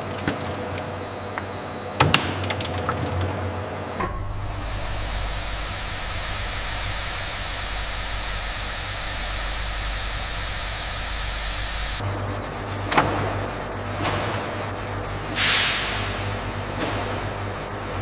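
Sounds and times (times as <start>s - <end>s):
machinery low hum: 3.5s - 18.0s
machinery hiss: 4.0s - 12.0s.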